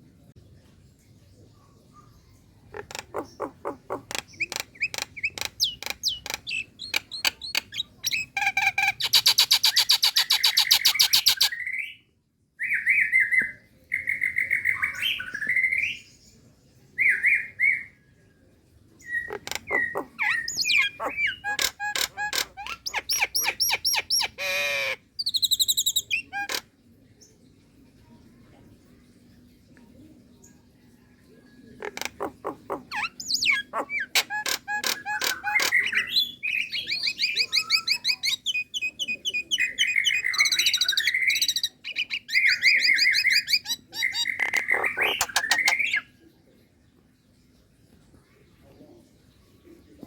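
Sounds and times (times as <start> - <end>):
myna bird calling: 2.7 - 11.6, 19.1 - 26.7, 31.8 - 46.1.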